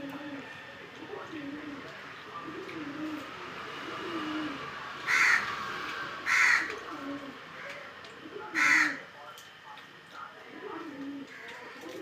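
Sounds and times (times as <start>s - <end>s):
crow cawing: 5.1s - 5.6s, 6.2s - 6.7s, 8.5s - 9.1s.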